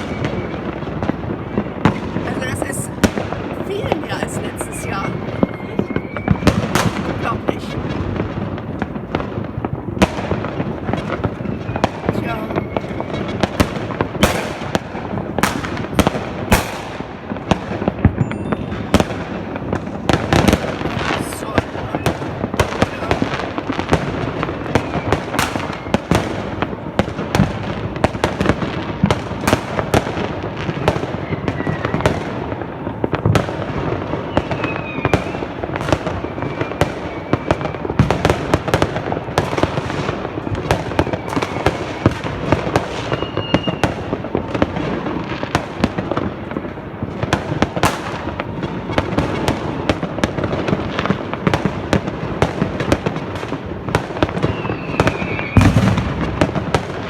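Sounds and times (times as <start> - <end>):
rocket whistles: 0.0 - 0.9, 4.7 - 7.4, 11.1 - 14.5, 18.1 - 19.2, 24.8 - 26.4, 30.7 - 32.1, 34.3 - 37.8, 40.4 - 42.3, 43.0 - 44.0, 54.3 - 56.0
fireworks banging: 0.0 - 57.0
fireworks crackling: 0.0 - 57.0.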